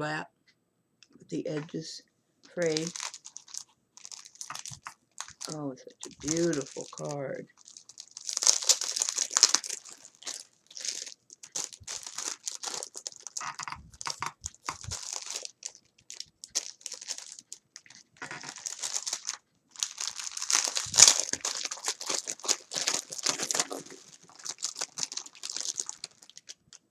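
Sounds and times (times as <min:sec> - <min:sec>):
packaging crinkling: 0:02.5 - 0:26.9.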